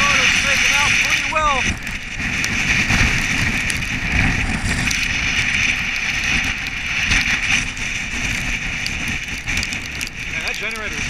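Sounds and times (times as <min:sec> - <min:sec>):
constant hiss: 0:00.0 - 0:11.0
wind buffeting microphone: 0:00.0 - 0:11.0.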